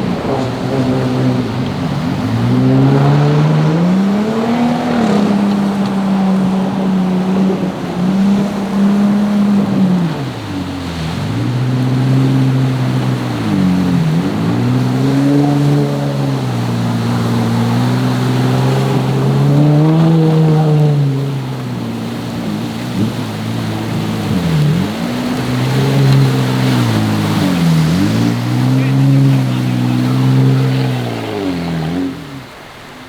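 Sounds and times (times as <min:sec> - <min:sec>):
engine revving: 0:00.0 - 0:33.0
steady rushing noise: 0:21.4 - 0:33.0.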